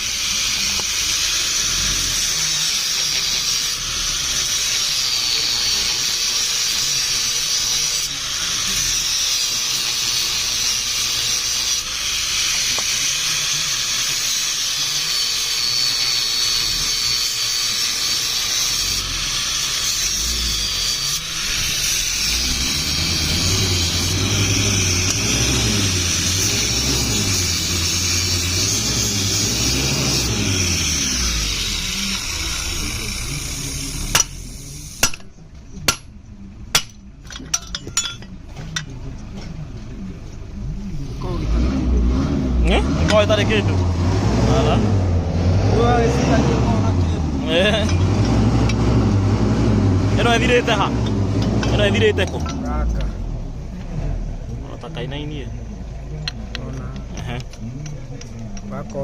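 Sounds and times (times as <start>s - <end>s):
power tool hissing: 0.0s - 35.3s.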